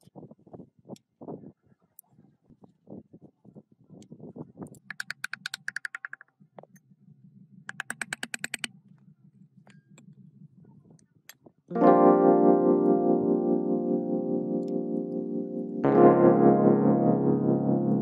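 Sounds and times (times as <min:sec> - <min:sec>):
rapid clicking: 0:04.9 - 0:06.2, 0:07.7 - 0:08.7.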